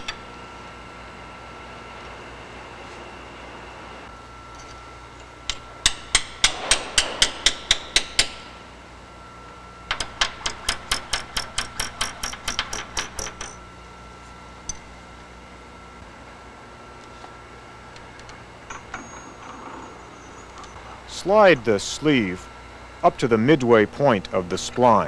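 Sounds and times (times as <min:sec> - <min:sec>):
hammer tapping on metal: 0:05.5 - 0:08.4.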